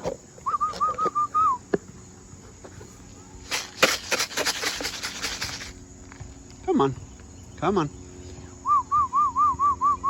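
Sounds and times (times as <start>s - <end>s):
person whistling short notes: 0.5s - 1.6s, 8.6s - 10.0s
rapid wing fluttering: 3.4s - 5.8s.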